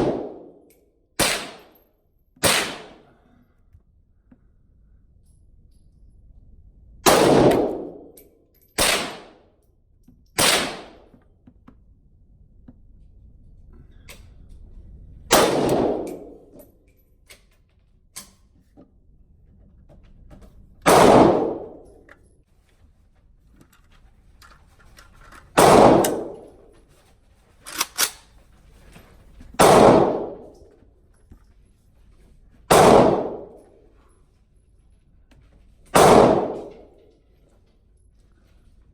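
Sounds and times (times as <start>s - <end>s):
rifle shots with echo: 0.0s - 0.6s, 1.2s - 1.8s, 2.4s - 3.2s, 7.0s - 8.2s, 8.8s - 9.5s, 10.4s - 11.1s, 15.3s - 16.6s, 20.8s - 21.9s, 25.6s - 26.6s, 29.6s - 30.6s, 32.7s - 33.8s, 36.0s - 36.9s.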